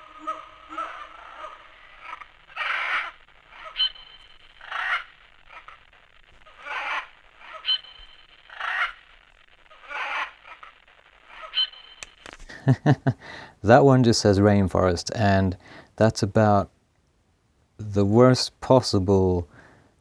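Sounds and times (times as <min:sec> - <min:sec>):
screeching animal calls over speaker: 0:00.0 - 0:12.0.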